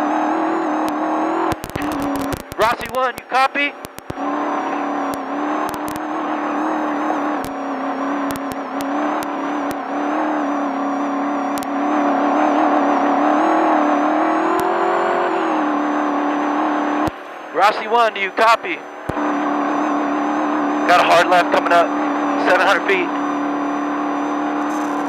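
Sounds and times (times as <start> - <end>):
truck engine running hard: 0.0 - 25.0
sharp clicks: 0.8 - 3.0, 3.8 - 7.6, 8.2 - 9.8, 11.5 - 11.8.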